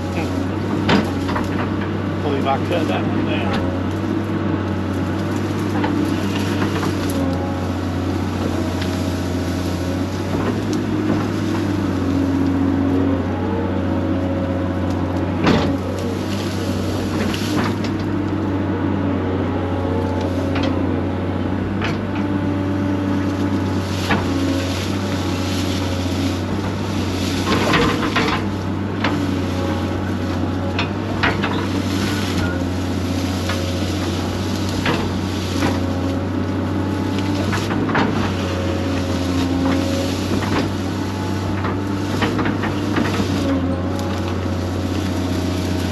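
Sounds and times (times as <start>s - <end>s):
digging knocks and clanks: 0.0s - 4.2s, 15.2s - 18.2s, 21.5s - 45.9s
diesel engine running under load: 0.0s - 45.9s
hydraulic pump whining: 0.0s - 45.9s.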